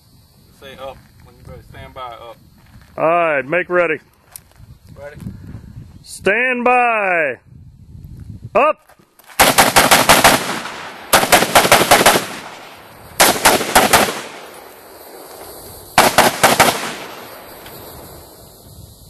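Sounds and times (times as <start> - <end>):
rifle firing bursts: 9.4 - 14.7, 16.0 - 17.5.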